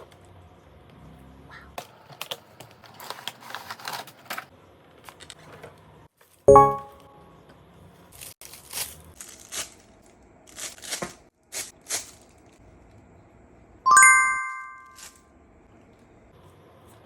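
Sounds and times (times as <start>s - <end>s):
packaging crinkling and tearing: 2.0s - 5.4s, 8.1s - 12.6s
bright ringing ding: 6.5s - 7.2s, 13.9s - 15.0s.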